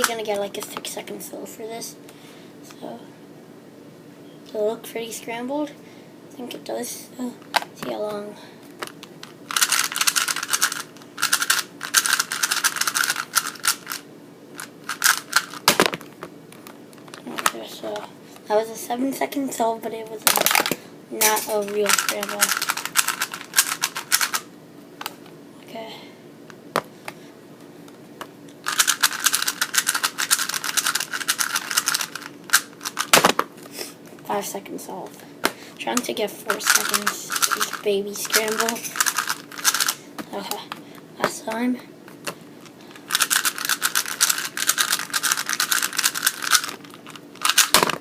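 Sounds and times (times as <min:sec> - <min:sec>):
puzzle cube clicking and rattling: 0:08.8 - 0:14.0, 0:14.6 - 0:16.0, 0:20.3 - 0:24.5, 0:28.6 - 0:33.4, 0:36.0 - 0:40.0, 0:43.0 - 0:48.0
plastic puzzle cube clicking: 0:09.5 - 0:14.0.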